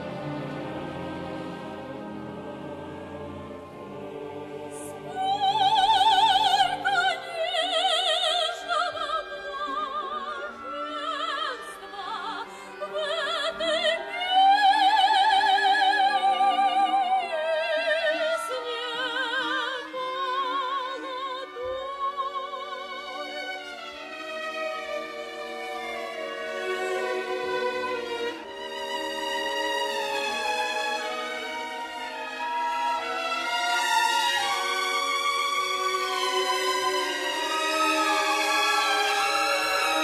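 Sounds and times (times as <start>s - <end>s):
symphony orchestra: 0.0s - 40.0s
soprano singing with vibrato: 4.2s - 28.5s.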